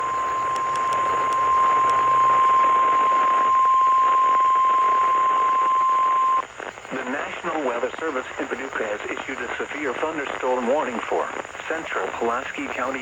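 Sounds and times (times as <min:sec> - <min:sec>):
steady high alarm tone: 0:00.0 - 0:06.4
radio receiver hiss: 0:00.0 - 0:13.0.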